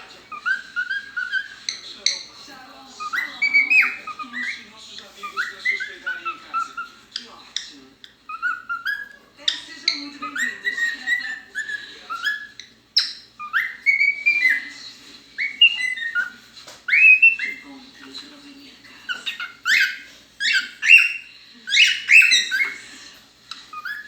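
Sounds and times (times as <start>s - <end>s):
bird singing whistled notes: 10.4s - 14.7s, 15.4s - 16.3s, 16.9s - 17.6s, 19.2s - 22.8s.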